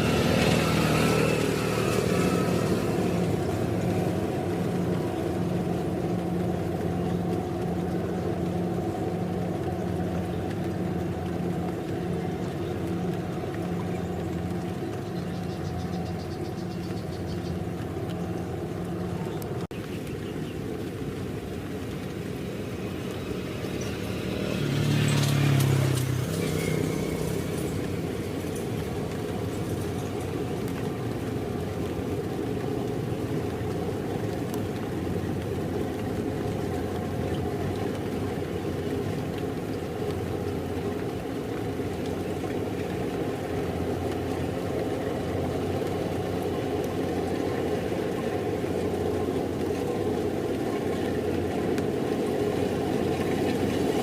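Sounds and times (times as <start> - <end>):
combine harvester droning: 0.0 - 9.4.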